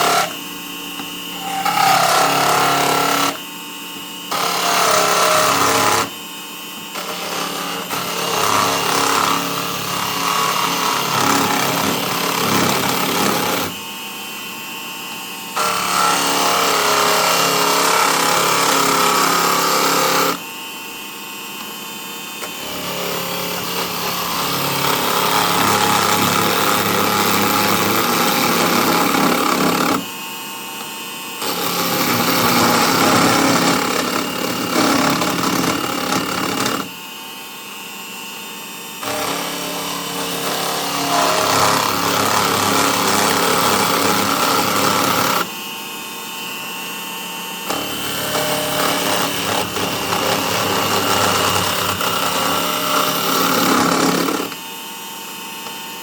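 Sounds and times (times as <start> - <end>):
turning tool scraping wood: 0.0 - 0.4, 1.0 - 3.4
lathe motor hum: 0.0 - 19.6.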